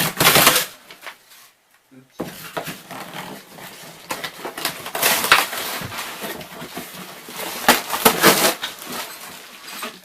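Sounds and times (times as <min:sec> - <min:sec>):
cardboard box being torn open: 0:02.8 - 0:09.3.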